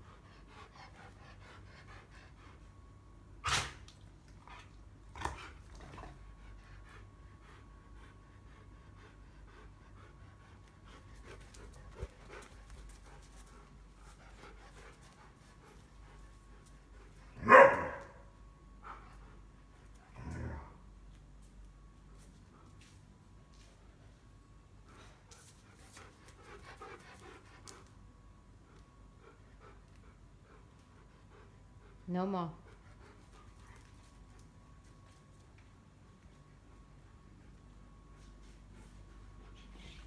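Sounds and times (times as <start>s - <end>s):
dog panting: 0.0s - 3.1s, 4.4s - 17.3s, 24.9s - 34.5s
dog barking loudly: 17.4s - 18.1s.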